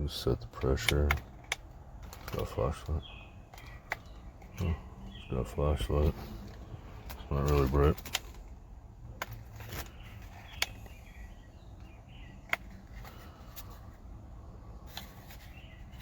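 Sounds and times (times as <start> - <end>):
low background hum: 0.0 - 16.0
plastic clicks and taps: 0.4 - 2.9, 3.5 - 4.7, 11.8 - 13.8.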